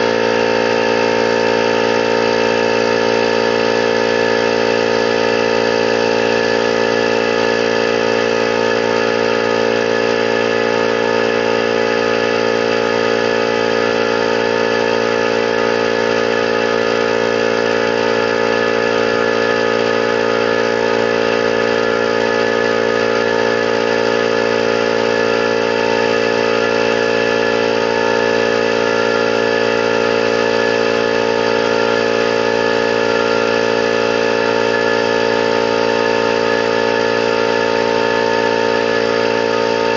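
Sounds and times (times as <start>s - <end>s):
air compressor running: 0.0s - 39.9s.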